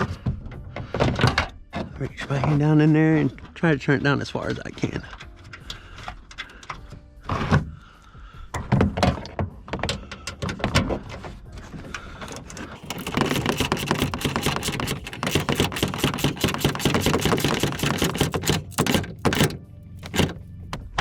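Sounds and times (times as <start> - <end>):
fast steady clicking: 12.8 - 20.4
metal knocks and clunks: 12.8 - 21.0.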